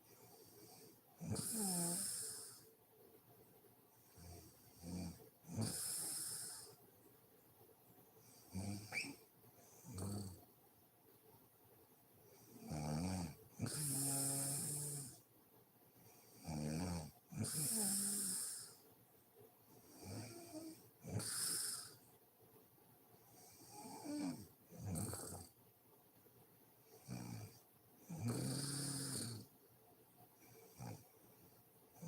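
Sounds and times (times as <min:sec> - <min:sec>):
woman snoring: 0:01.2 - 0:02.6, 0:04.9 - 0:06.8, 0:12.6 - 0:15.2, 0:16.5 - 0:18.8, 0:20.0 - 0:22.0, 0:27.1 - 0:29.5.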